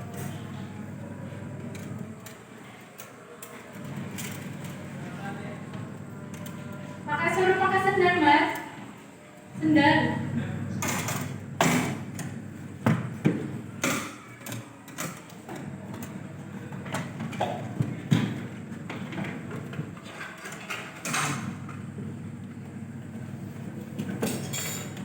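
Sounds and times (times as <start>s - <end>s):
steady low hum: 9.6s - 13.2s.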